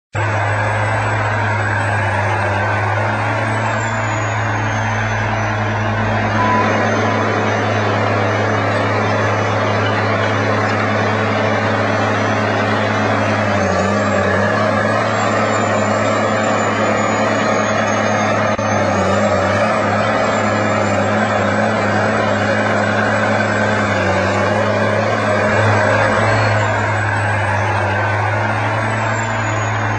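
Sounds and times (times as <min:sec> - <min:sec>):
heavy machine running with low hum: 0:00.2 - 0:29.9
thin high whine: 0:01.8 - 0:23.8, 0:24.4 - 0:29.9.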